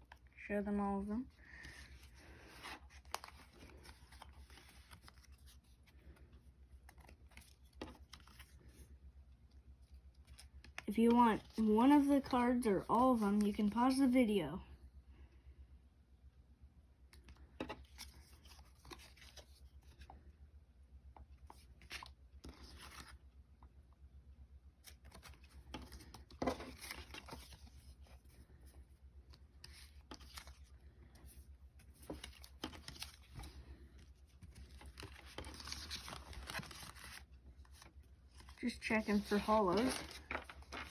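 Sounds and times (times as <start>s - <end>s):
trading cards rustling and clicking: 1.6s - 8.8s, 24.8s - 40.9s.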